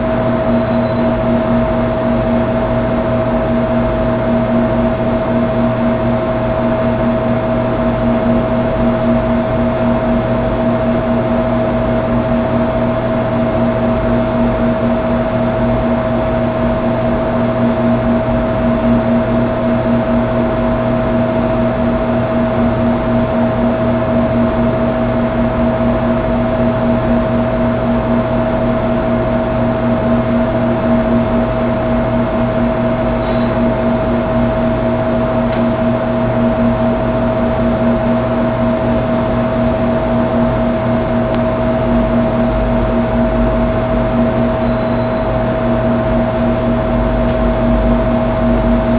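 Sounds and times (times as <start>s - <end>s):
high steady tone: 0.0s - 1.6s, 44.3s - 45.5s
low pulsing tone: 0.0s - 48.9s
steady hum and hiss: 0.0s - 48.9s.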